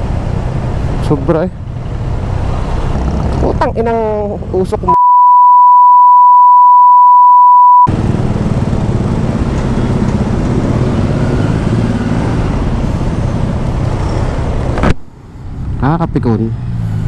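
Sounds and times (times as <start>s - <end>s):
road and wind noise: 0.0s - 5.0s, 7.9s - 17.0s
censor bleep: 4.9s - 7.9s.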